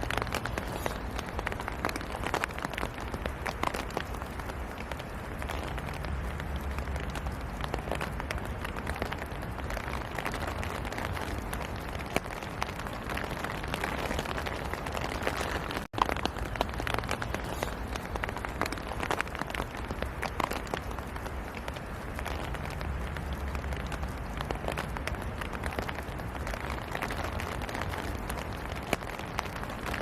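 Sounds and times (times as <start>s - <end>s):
raindrops ticking: 0.0s - 30.0s
steady rain falling: 0.0s - 30.0s.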